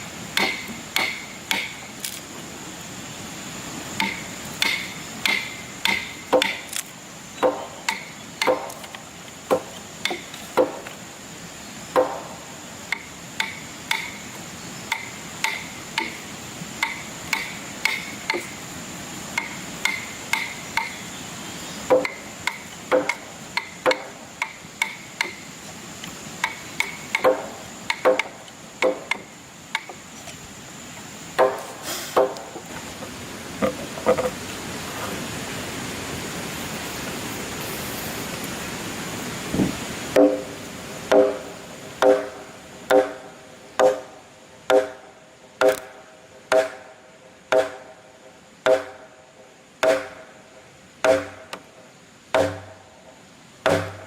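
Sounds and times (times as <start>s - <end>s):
hammer blows on wood: 21.9s - 25.5s, 26.4s - 30.0s, 31.4s - 32.6s, 39.6s - 48.0s, 48.6s - 49.1s, 49.8s - 50.3s, 51.0s - 51.7s, 52.3s - 52.8s, 53.6s - 54.0s.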